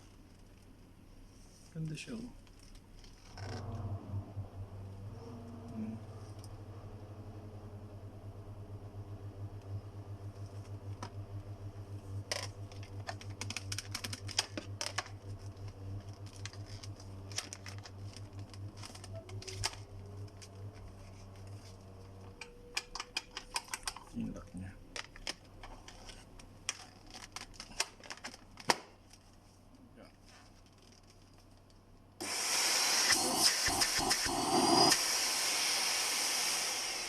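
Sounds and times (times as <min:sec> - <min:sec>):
steady low hum: 0:00.0 - 0:28.6, 0:31.8 - 0:37.0
plastic parts clicking and snapping: 0:12.3 - 0:15.2, 0:22.3 - 0:24.2, 0:24.9 - 0:29.2.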